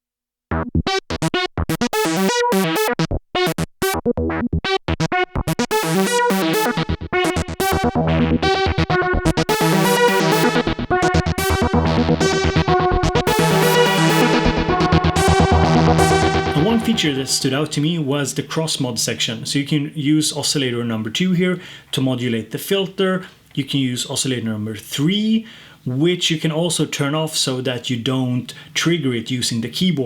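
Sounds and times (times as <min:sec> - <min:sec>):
synthesizer bass notes: 0:00.5 - 0:18.1
synthesizer bright short notes: 0:00.5 - 0:18.3.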